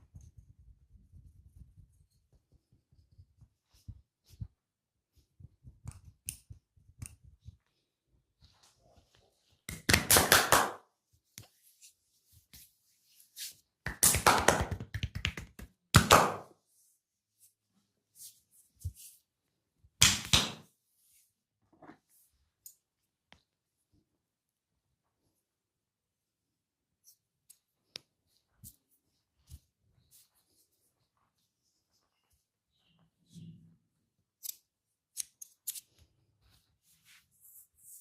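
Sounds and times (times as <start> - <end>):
hands slapping and tapping skin: 9.7 - 10.8, 13.8 - 16.5, 20.0 - 20.7.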